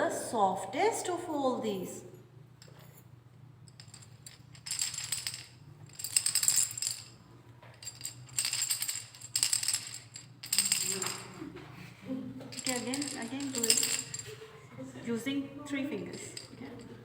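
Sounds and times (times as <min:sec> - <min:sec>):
cylinders rattling when shaken: 0:03.6 - 0:11.5, 0:12.5 - 0:14.4, 0:16.0 - 0:17.0.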